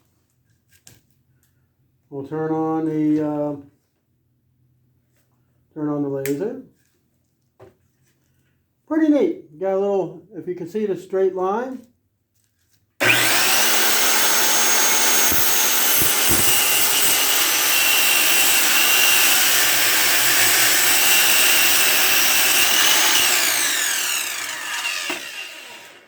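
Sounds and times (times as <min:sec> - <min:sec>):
circular saw cutting wood: 0:13.0 - 0:26.0.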